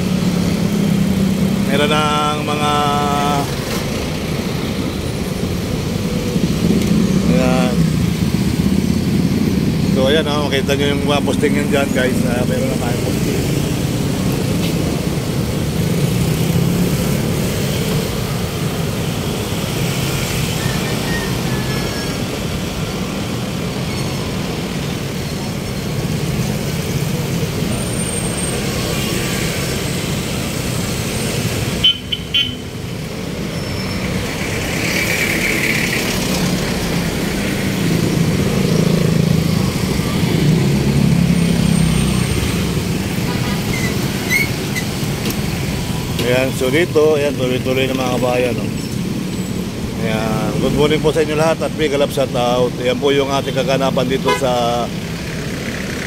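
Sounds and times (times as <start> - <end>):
city street traffic: 0.0 - 56.0
car horn toot: 31.8 - 32.6, 54.3 - 54.5.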